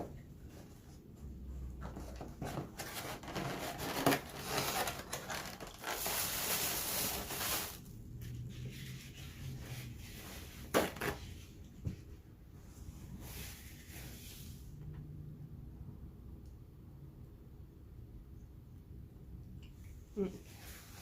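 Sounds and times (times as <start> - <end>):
food packaging rustling and crinkling: 1.7 - 7.9.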